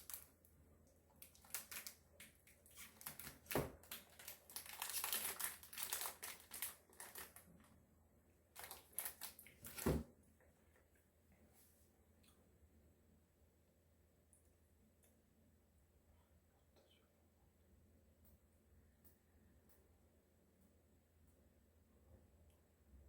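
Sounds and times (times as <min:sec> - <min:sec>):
plastic wrapper crinkling: 0:00.0 - 0:00.3, 0:01.2 - 0:07.7, 0:08.5 - 0:10.0.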